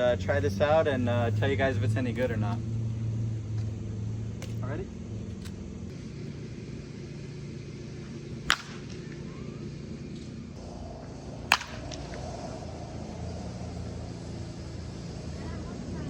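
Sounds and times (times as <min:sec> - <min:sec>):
steady low hum: 0:00.0 - 0:16.0
wooden bat hitting ball: 0:08.4 - 0:09.3, 0:11.4 - 0:12.4.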